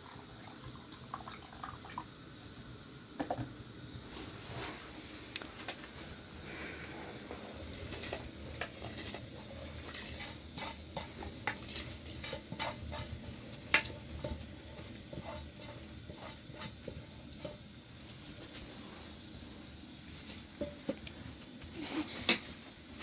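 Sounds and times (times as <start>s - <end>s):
steady low hiss: 0.0s - 23.0s
utensil stirring and scraping pot: 6.4s - 23.0s.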